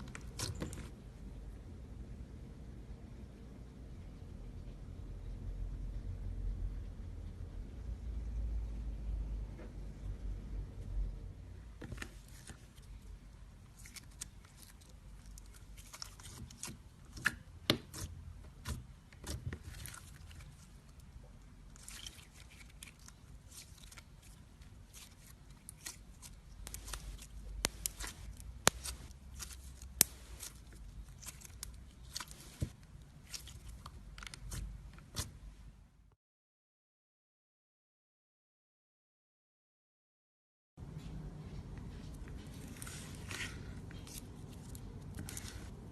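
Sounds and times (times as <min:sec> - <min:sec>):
slime sticky clicks and crackles: 0:24.9 - 0:32.4.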